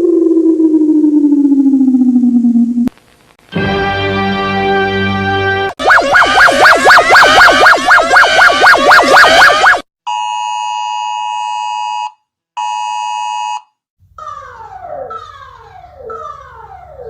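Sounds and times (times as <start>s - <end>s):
low hum: 0.0s - 2.9s
warbling siren: 0.0s - 2.9s, 5.8s - 9.9s, 14.2s - 17.0s
downward gliding tone: 5.8s - 9.8s
steady electronic alert tone: 5.8s - 9.8s.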